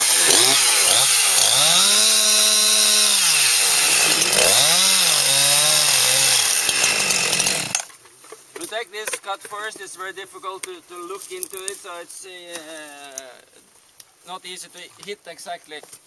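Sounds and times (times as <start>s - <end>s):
chainsaw cutting wood: 0.0s - 7.9s.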